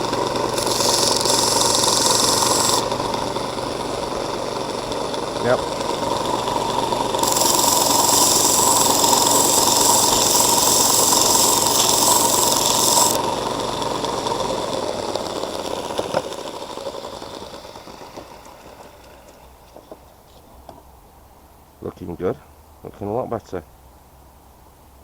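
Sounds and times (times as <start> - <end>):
blade grinding on sander belt: 0.0 - 19.4
belt sander motor hum: 0.0 - 19.9.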